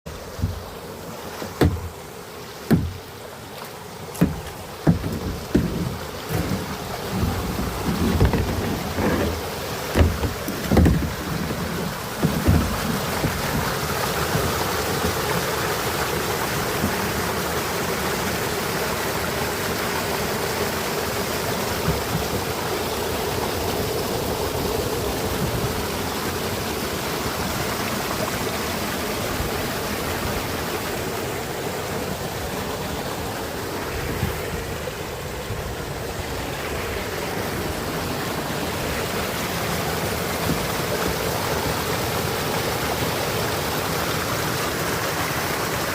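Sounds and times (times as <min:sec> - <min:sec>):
waterfall rushing: 0:00.1 - 0:45.9
brief knocks: 0:01.4 - 0:02.0, 0:02.7 - 0:03.0, 0:04.2 - 0:13.8.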